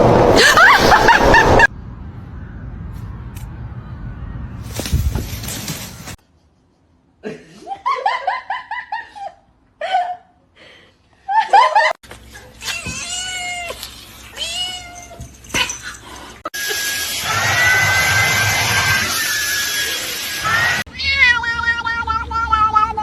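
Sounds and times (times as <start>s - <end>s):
cats meowing: 12.6s - 15.9s, 20.5s - 23.0s.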